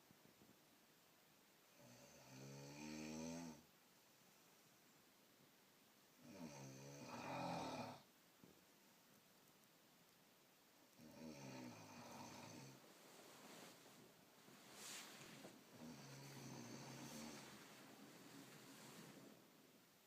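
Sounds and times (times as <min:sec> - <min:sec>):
person snoring: 0:06.2 - 0:08.0, 0:11.0 - 0:12.8, 0:15.8 - 0:17.6.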